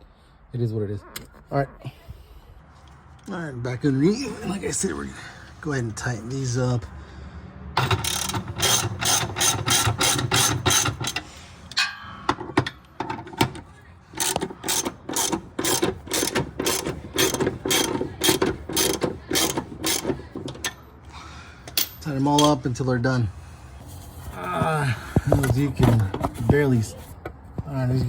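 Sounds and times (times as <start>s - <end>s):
hand ratchet clicking: 7.8s - 11.3s, 14.2s - 20.8s.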